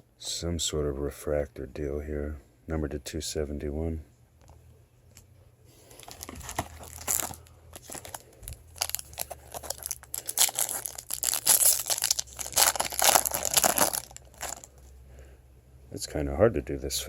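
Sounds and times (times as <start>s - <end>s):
foil wrapper tearing and crinkling: 5.9s - 14.7s.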